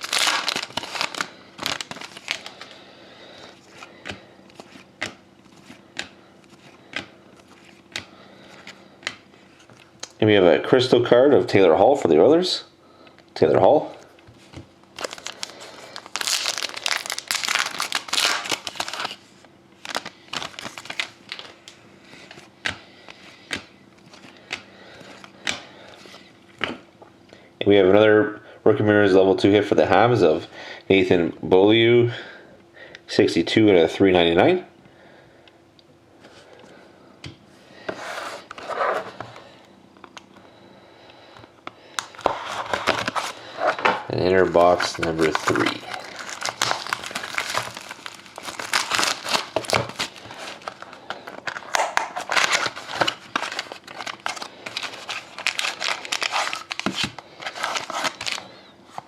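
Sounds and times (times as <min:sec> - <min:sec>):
plastic packaging crinkling: 0:00.0 - 0:02.8, 0:14.9 - 0:22.5, 0:41.9 - 0:59.0.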